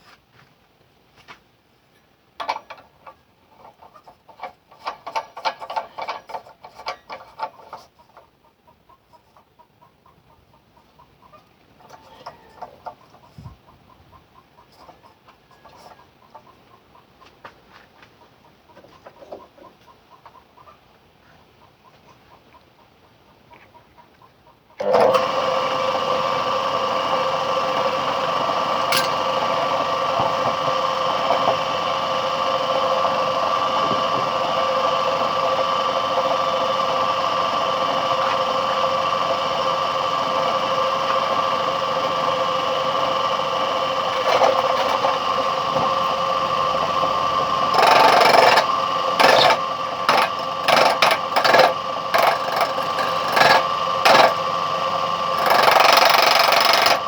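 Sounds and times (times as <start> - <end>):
lathe motor humming: 24.8 - 57.0
rough irregular bursts: 47.6 - 54.4, 55.4 - 57.0.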